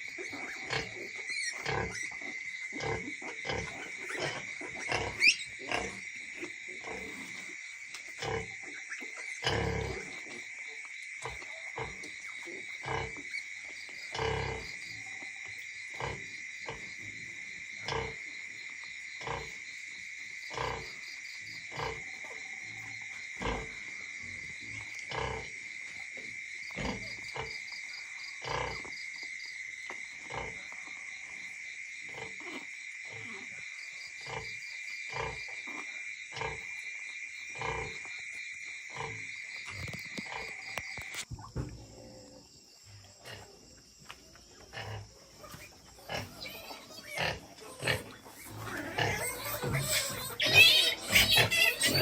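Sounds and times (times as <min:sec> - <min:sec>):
pigs grunting: 0:00.0 - 0:10.4, 0:11.2 - 0:13.4, 0:14.0 - 0:15.2, 0:15.9 - 0:18.2, 0:19.2 - 0:19.6, 0:20.5 - 0:21.0, 0:21.7 - 0:25.6, 0:26.2 - 0:29.0, 0:30.2 - 0:30.8, 0:41.4 - 0:42.5, 0:44.6 - 0:52.0.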